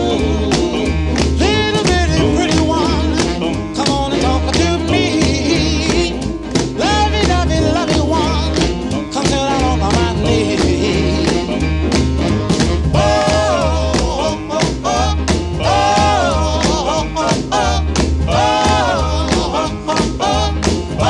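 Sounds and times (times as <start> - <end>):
person singing: 0.0 - 11.6
bass: 0.0 - 21.0
drums: 0.0 - 21.0
guitar: 0.0 - 21.0.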